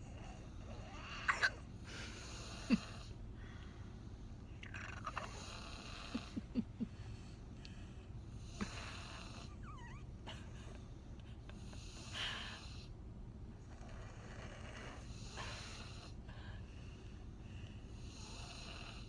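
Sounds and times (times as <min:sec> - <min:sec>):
person snoring: 0:04.6 - 0:06.6.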